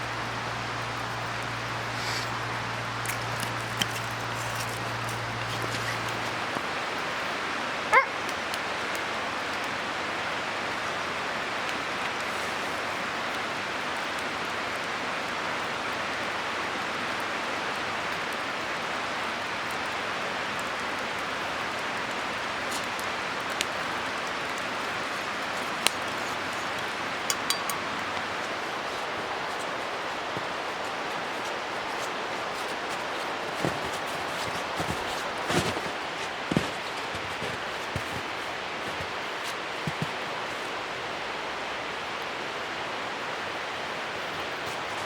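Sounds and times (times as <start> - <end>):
dog bark: 7.9 - 8.3.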